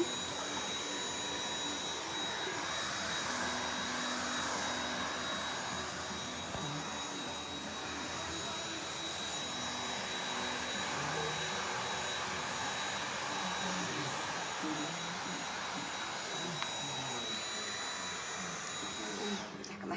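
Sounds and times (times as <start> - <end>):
vacuum cleaner running: 0.0 - 19.6.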